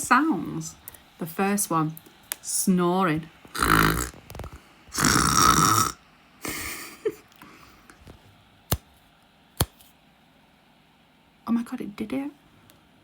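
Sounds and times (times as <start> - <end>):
person imitating snoring: 3.5 - 6.0.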